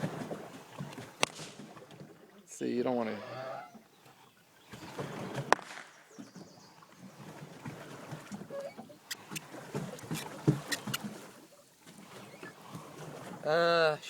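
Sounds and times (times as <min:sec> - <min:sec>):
water sloshing: 0:00.0 - 0:14.0
paddle knocks and clicks: 0:04.7 - 0:13.4.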